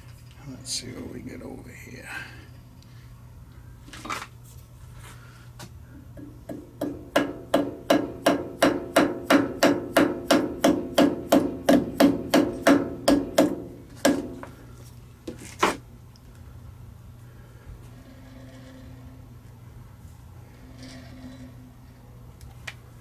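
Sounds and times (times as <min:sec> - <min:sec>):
hammer tapping on metal: 0:06.1 - 0:14.5.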